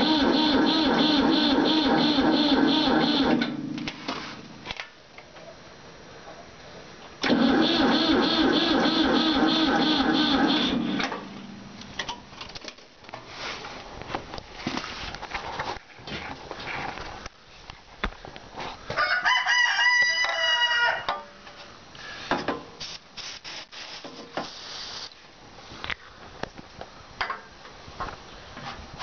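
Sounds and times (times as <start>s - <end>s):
rooster crowing: 19.0s - 21.1s.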